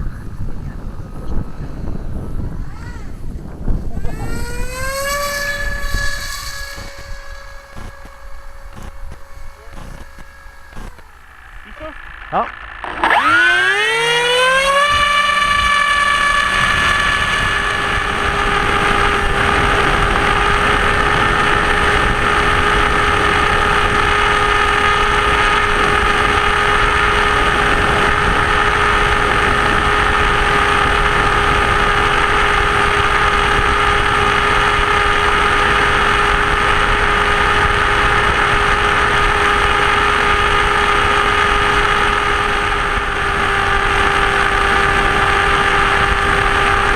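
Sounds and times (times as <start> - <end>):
electric motor whine: 1.3 - 46.9
airflow rush: 3.2 - 12.4.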